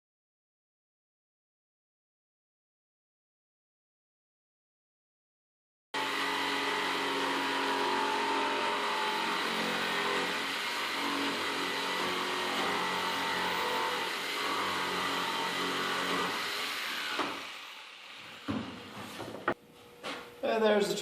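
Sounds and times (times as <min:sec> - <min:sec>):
power saw cutting wood: 0:06.0 - 0:19.6.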